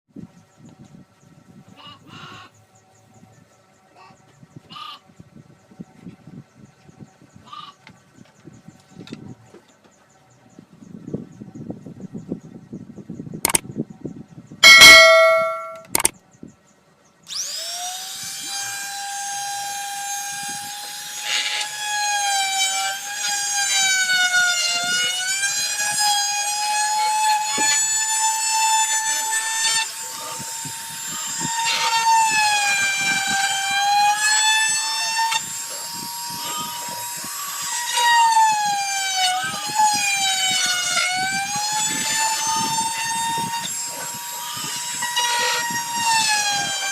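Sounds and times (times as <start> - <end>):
clicks: 13.4 - 13.6, 15.7 - 16.2
brief loud tone: 14.6 - 16.0
wood router whining: 14.6 - 16.1, 17.3 - 46.9.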